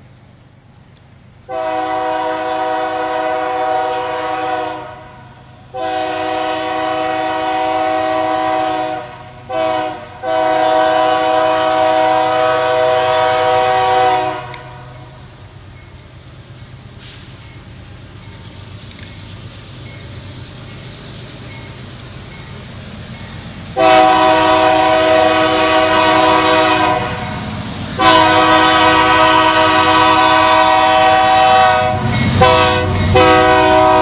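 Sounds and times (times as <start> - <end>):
passing train rumble: 0.0 - 34.0
locomotive air horn blasts: 1.5 - 15.1, 23.8 - 34.0.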